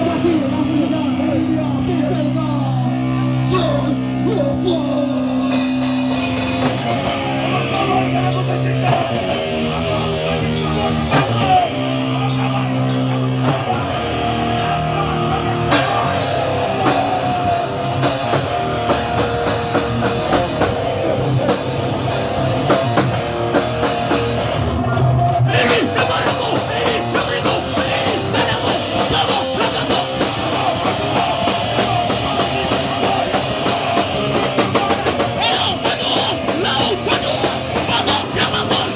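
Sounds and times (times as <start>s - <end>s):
punk band playing live: 0.0s - 38.9s
fast drum kit: 5.5s - 38.9s.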